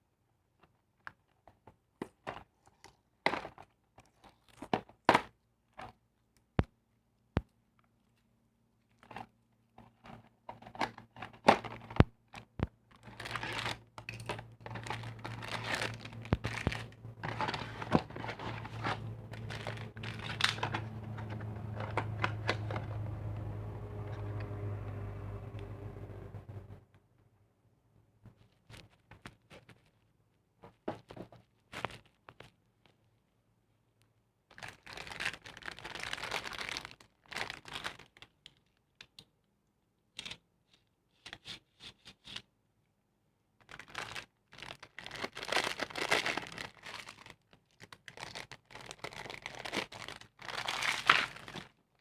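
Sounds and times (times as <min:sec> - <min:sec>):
sharp taps and clicks on packaging: 0:10.5 - 0:23.4
wrapping crinkling and tearing: 0:11.4 - 0:23.0, 0:34.5 - 0:38.8, 0:43.6 - 0:52.0.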